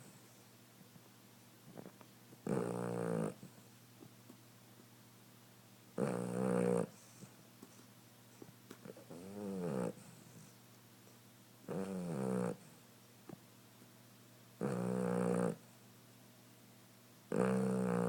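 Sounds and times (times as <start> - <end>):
puppy snoring: 1.7 - 3.6, 6.0 - 7.4, 8.8 - 10.6, 11.6 - 12.8, 14.6 - 15.7, 17.3 - 18.0.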